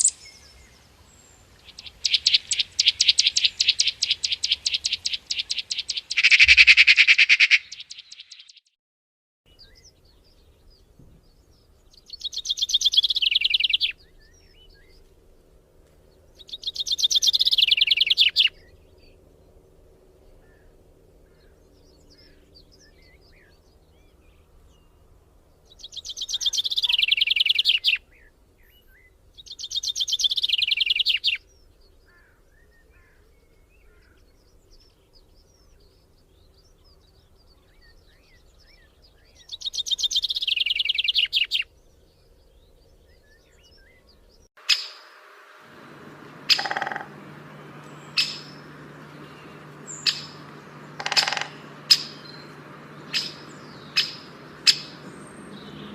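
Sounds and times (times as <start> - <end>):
bird trilling: 0.0 - 0.2, 1.8 - 8.3, 44.6 - 55.9
faint bird chirping: 0.0 - 8.7, 9.5 - 15.2, 16.0 - 55.9
steady low hum: 44.9 - 55.9.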